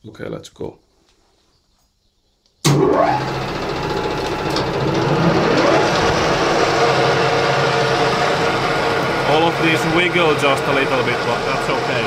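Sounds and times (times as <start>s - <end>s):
gear hum: 2.7s - 12.0s
metal lathe motor whine: 2.7s - 12.0s.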